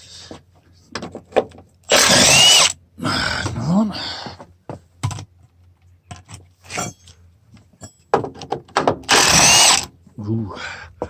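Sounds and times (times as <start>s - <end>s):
cordless power tool spinning up: 1.9s - 2.8s, 9.1s - 9.9s.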